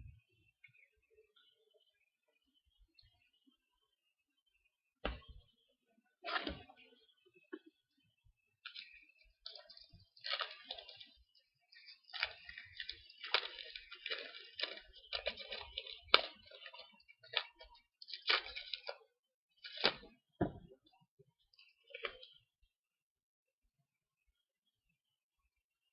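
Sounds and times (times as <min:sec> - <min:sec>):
foil and card crinkling: 0:08.7 - 0:19.0.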